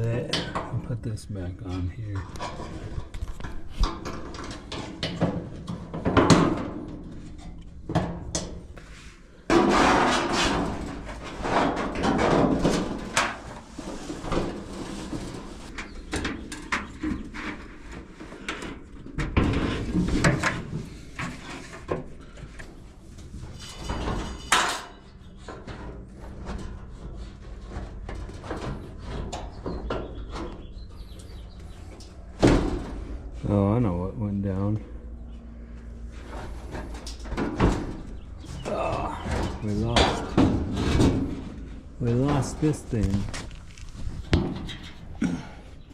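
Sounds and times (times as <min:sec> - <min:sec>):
rattling scrapes: 0:01.7 - 0:07.5, 0:08.8 - 0:33.4
metal and plastic parts clunking: 0:09.5 - 0:33.3, 0:36.2 - 0:45.9.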